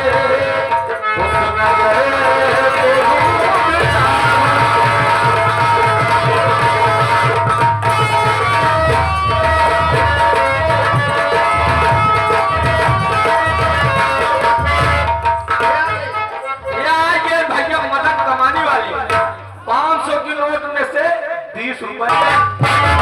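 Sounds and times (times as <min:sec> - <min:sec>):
hand drums beating: 0:00.0 - 0:16.4, 0:22.1 - 0:23.0.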